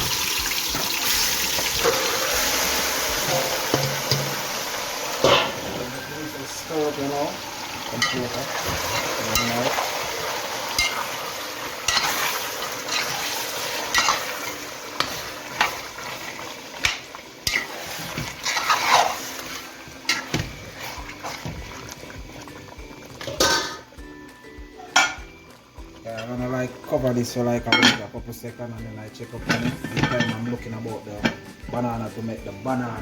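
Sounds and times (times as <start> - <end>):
chicken sizzling in hot oil: 0.0 - 28.0
spoon scraping against pot: 11.8 - 16.2, 16.8 - 21.6.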